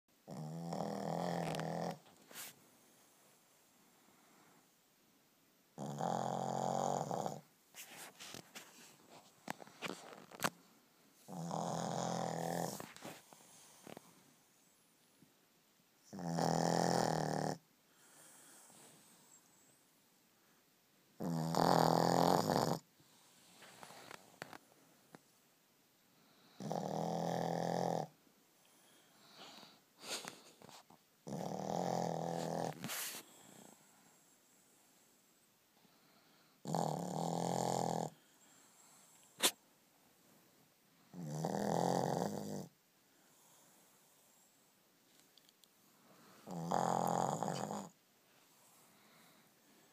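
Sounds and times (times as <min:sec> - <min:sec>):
dog snoring: 0:00.2 - 0:02.1, 0:05.8 - 0:07.5, 0:11.2 - 0:14.1, 0:16.0 - 0:19.7, 0:21.2 - 0:24.5, 0:26.4 - 0:28.2, 0:31.2 - 0:33.8, 0:36.0 - 0:39.6, 0:41.1 - 0:42.8, 0:46.2 - 0:48.0
faint breath: 0:17.9 - 0:20.7, 0:23.0 - 0:25.1, 0:28.6 - 0:30.9, 0:35.8 - 0:36.6, 0:38.1 - 0:39.4, 0:45.9 - 0:46.6, 0:48.3 - 0:49.9.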